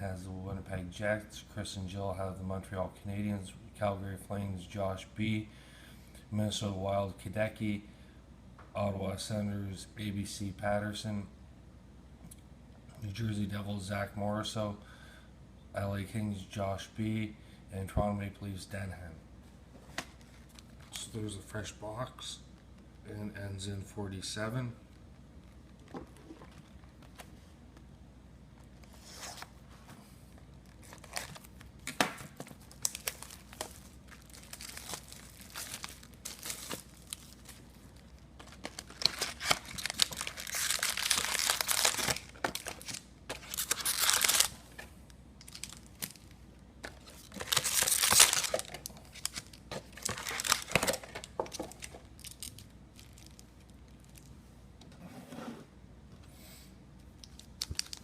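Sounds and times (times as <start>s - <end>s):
wrapping crinkling and tearing: 30.5s - 31.7s, 32.5s - 44.8s, 45.4s - 54.3s, 57.2s - 58.0s.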